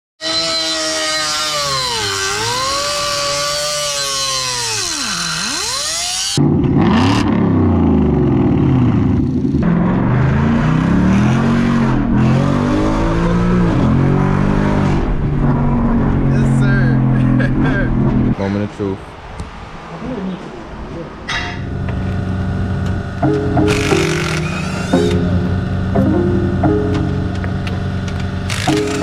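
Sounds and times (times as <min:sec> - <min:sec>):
car engine revving: 0:01.6 - 0:18.4, 0:21.6 - 0:29.0
deeper engine revving: 0:06.3 - 0:18.4, 0:21.6 - 0:29.0.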